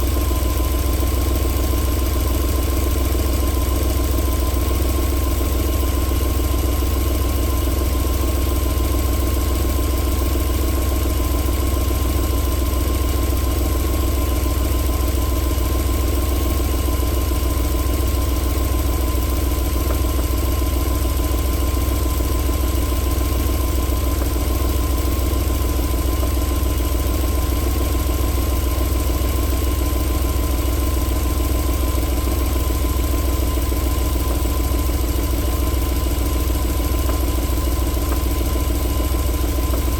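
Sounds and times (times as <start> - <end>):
car engine idling: 0.0 - 39.9.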